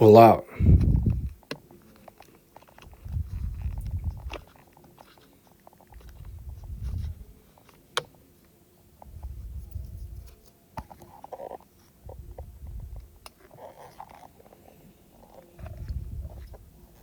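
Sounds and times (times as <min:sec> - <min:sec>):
low muffled rumbles: 0:00.5 - 0:01.4, 0:02.9 - 0:04.4, 0:06.0 - 0:07.4, 0:09.0 - 0:10.3, 0:12.0 - 0:13.2, 0:15.6 - 0:16.7.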